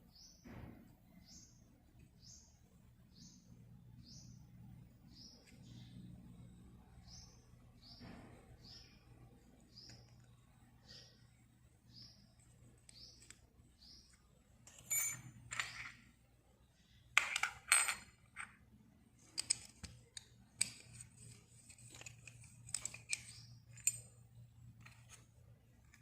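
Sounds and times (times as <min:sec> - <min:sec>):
metal parts clinking and scraping: 0:14.6 - 0:16.1, 0:17.2 - 0:18.5, 0:19.3 - 0:25.3.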